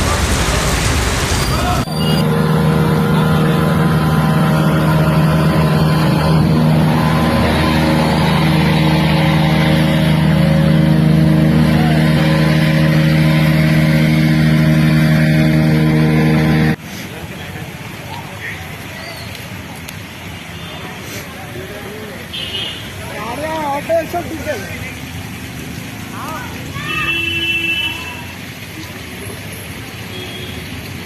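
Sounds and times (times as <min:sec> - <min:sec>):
vehicle engine humming: 0:00.0 - 0:17.9.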